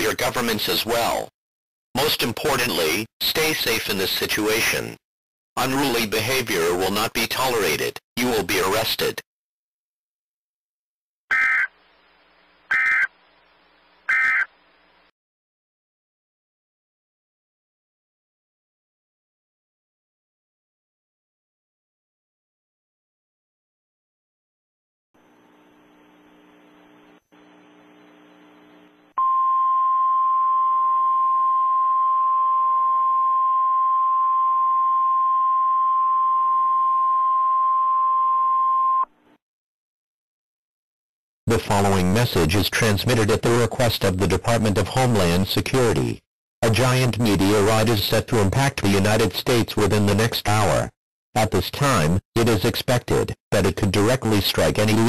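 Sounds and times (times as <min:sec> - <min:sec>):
faint broadcast hiss and hum: 0:11.7 - 0:15.1, 0:25.2 - 0:29.1.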